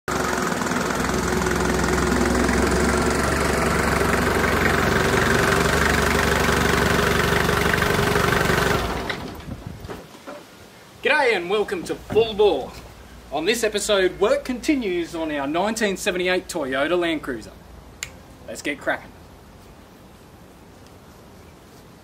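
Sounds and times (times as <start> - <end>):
engine idling: 0.1 - 9.4.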